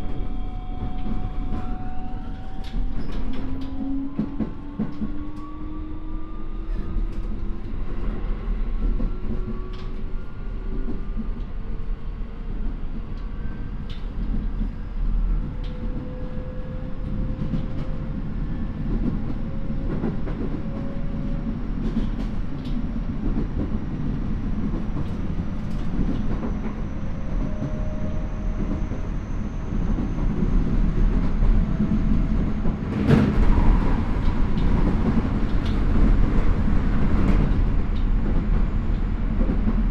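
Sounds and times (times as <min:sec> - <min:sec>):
train running gear rumble: 0:00.0 - 0:39.9.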